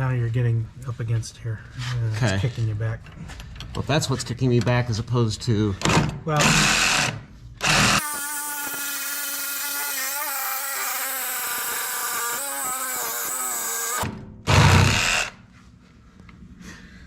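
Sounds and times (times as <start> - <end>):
reciprocating saw cutting steel: 7.7 - 15.3.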